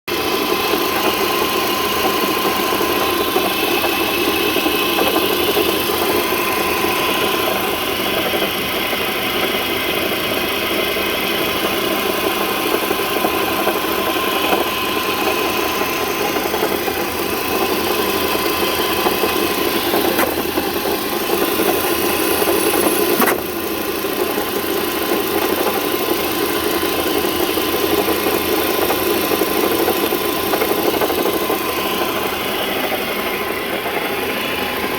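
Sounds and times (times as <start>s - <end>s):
car engine idling: 0.1s - 34.9s
sharp click: 20.1s - 20.4s, 23.2s - 23.4s.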